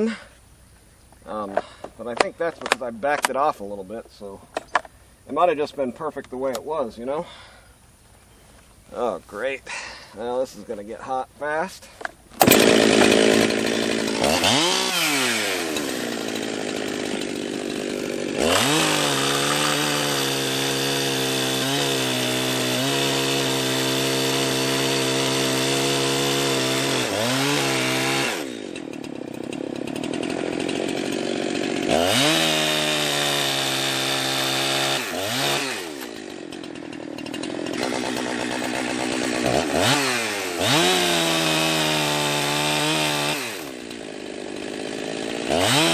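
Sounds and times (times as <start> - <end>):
chainsaw cutting wood: 12.0 - 45.9.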